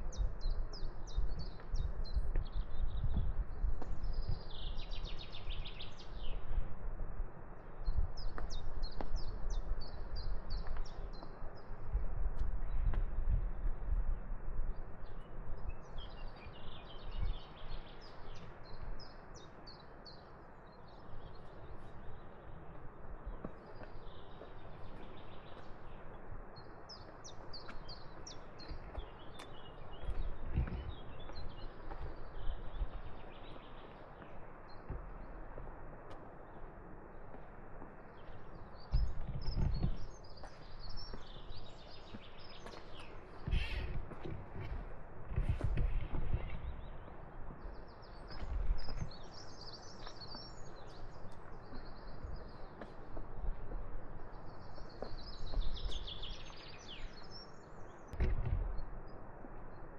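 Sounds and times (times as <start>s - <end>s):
small birds chirping: 0.0s - 6.6s, 7.7s - 11.9s, 15.1s - 35.7s, 36.3s - 59.9s
outdoor background noise: 0.0s - 59.9s
low thumps: 58.1s - 59.1s.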